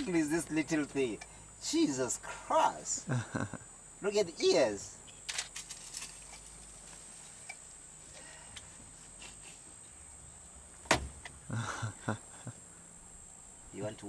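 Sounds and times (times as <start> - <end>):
insect chorus: 0.0 - 14.0.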